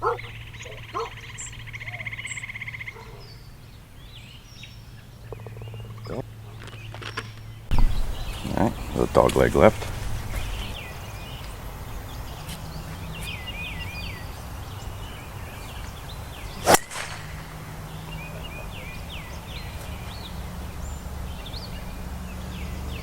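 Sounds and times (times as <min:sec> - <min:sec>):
birds chirping: 0:00.0 - 0:23.0
low wind noise: 0:03.5 - 0:23.0
golf club striking ball: 0:16.6 - 0:18.2.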